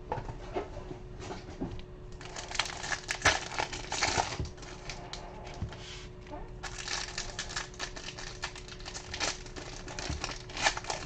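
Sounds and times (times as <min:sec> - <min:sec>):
faint steady hum: 0:00.0 - 0:11.0
foil wrapper crinkling: 0:02.2 - 0:05.2, 0:06.6 - 0:11.0.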